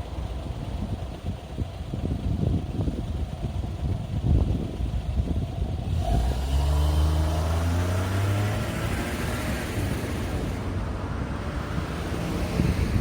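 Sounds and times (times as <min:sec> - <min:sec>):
wind buffeting microphone: 0:00.0 - 0:06.3, 0:07.6 - 0:13.0
vehicle engine accelerating: 0:05.8 - 0:13.0.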